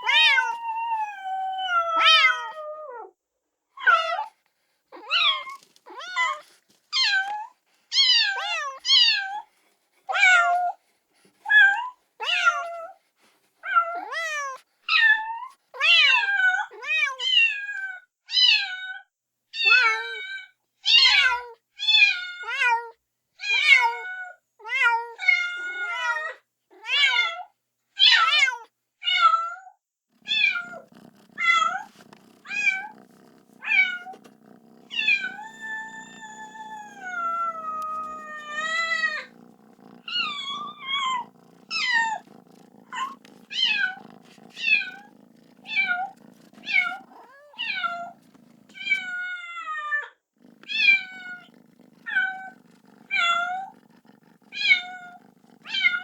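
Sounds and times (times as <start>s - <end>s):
kitten meowing: 0.0s - 2.6s, 30.2s - 49.3s.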